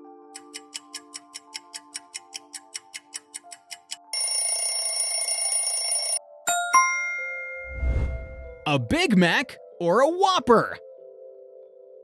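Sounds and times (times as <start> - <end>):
soft background music: 0.0 - 12.0
alarm bell ringing: 4.2 - 7.6.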